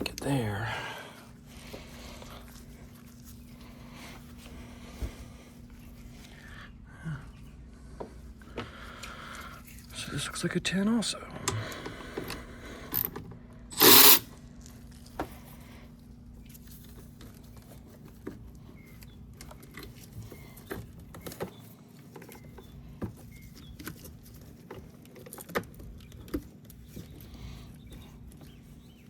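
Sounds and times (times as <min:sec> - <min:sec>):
hand tools clinking on metal: 0:13.7 - 0:14.2.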